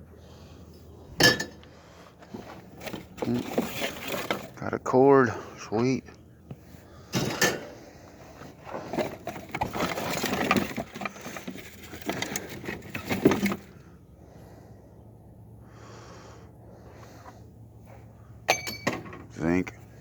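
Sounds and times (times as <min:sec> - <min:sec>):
scrap metal clattering: 0:02.3 - 0:04.6, 0:08.5 - 0:13.8.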